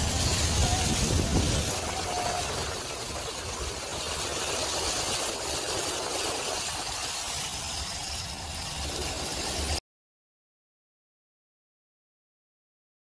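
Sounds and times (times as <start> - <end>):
even hiss: 0.0 - 9.8
low rumble: 0.0 - 9.8
vehicle engines running: 0.0 - 9.8.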